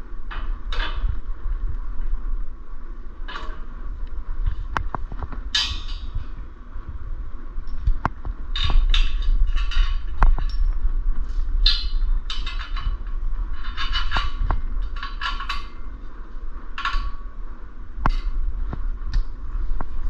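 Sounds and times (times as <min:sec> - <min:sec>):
steady low hum: 0:00.0 - 0:20.0
metal tools rattling and clicking: 0:11.6 - 0:15.8.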